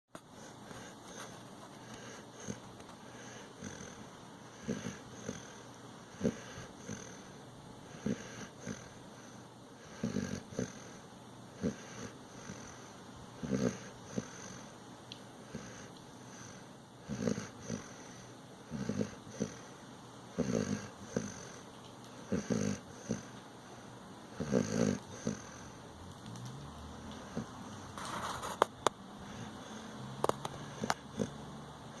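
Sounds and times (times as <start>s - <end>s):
snoring snorts and snuffles: 0.4s - 11.0s, 11.6s - 14.6s, 15.5s - 19.7s, 20.3s - 21.6s, 22.2s - 23.4s, 24.4s - 25.8s, 26.9s - 28.7s, 29.3s - 32.0s
soft breath: 29.1s - 31.3s.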